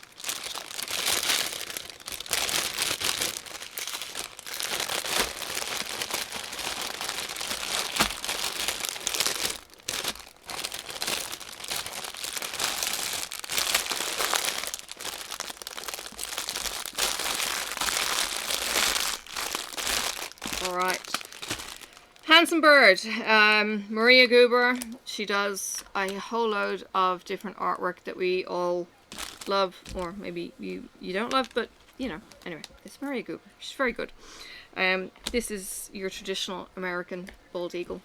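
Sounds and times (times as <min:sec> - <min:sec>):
plastic bags crinkling: 0:00.0 - 0:22.5, 0:29.1 - 0:33.0.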